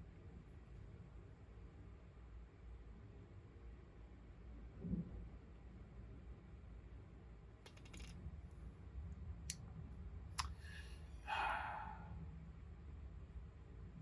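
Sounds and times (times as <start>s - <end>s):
small hard objects clicking: 7.7s - 8.2s.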